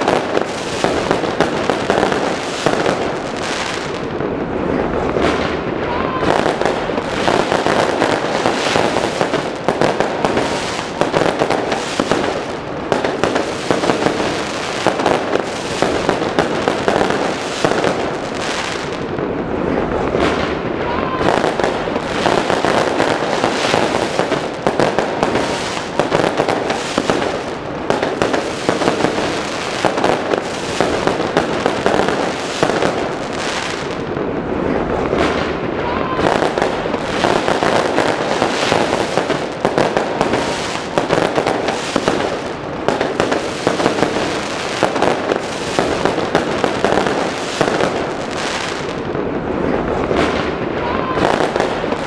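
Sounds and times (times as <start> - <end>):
fireworks bangs and crackling: 0.0 - 52.0
rising firework whistle: 50.2 - 51.8.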